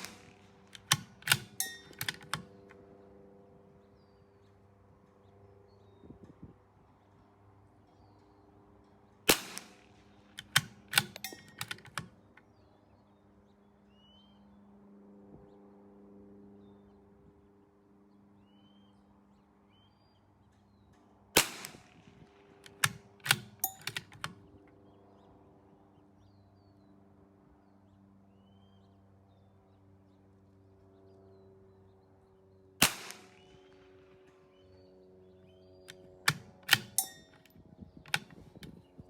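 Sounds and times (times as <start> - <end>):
rifle shots: 0.0 - 2.7, 9.3 - 12.2, 21.4 - 24.4, 32.8 - 34.2, 36.0 - 37.4
rifle bolt metallic clicks: 0.0 - 2.8, 9.3 - 12.5, 22.6 - 24.7, 35.8 - 38.9.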